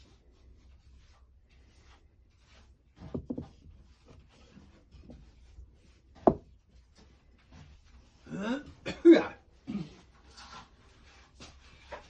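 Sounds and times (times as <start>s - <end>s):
objects rubbing and scraping: 0.0s - 8.2s, 10.0s - 12.0s
soft knocks: 3.0s - 3.6s, 6.2s - 6.6s.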